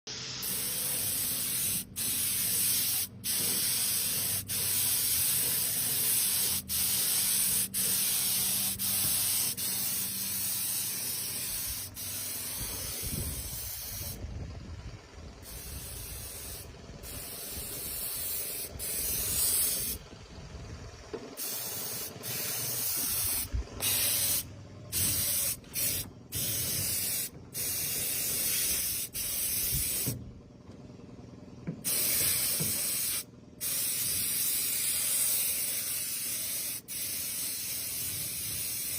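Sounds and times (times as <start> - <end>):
paint spray gun hissing: 0.1 - 14.2, 15.4 - 20.0, 21.4 - 30.2, 31.8 - 38.9.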